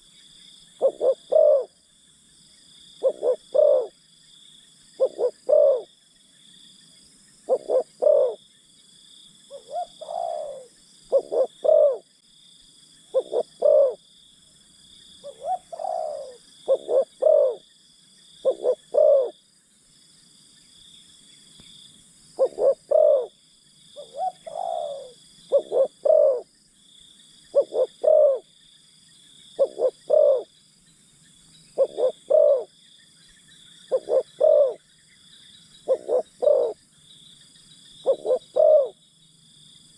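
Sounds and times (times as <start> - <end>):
high drone of insects: 0.0 - 39.9
dove cooing: 0.8 - 1.8, 3.0 - 4.0, 5.0 - 5.9, 7.5 - 8.4, 9.5 - 12.1, 13.1 - 14.0, 15.2 - 17.7, 18.4 - 19.4, 22.4 - 23.4, 24.0 - 26.5, 27.5 - 28.5, 29.6 - 30.5, 31.8 - 32.7, 33.9 - 34.8, 35.8 - 36.8, 38.0 - 39.0.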